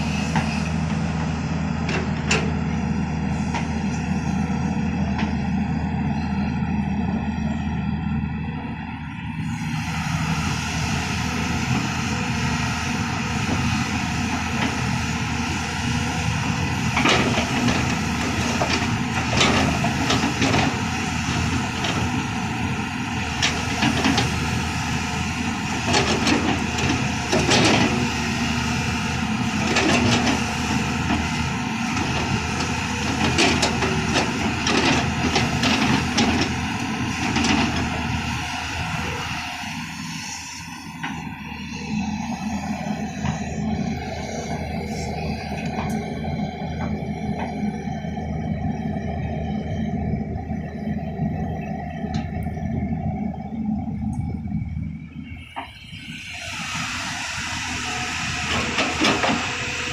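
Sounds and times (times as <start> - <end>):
digger bucket clanking and scraping: 0.0 - 4.0, 11.3 - 39.6, 58.3 - 59.9
diesel engine running: 0.0 - 59.9.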